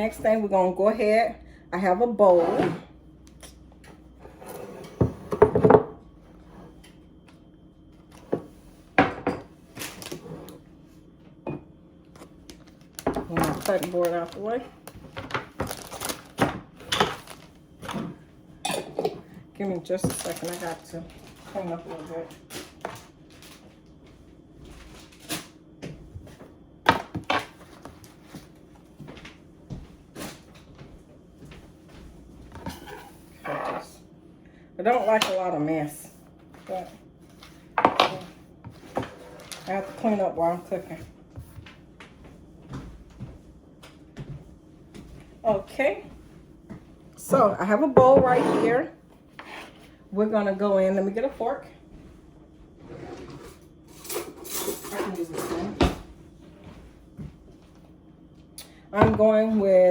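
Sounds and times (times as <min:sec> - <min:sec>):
kitchen items knocking and clunking: 0:04.9 - 0:06.0, 0:08.3 - 0:10.3, 0:13.0 - 0:23.0, 0:26.8 - 0:27.6, 0:37.7 - 0:40.4, 0:47.3 - 0:48.8, 0:59.0 - 0:59.6.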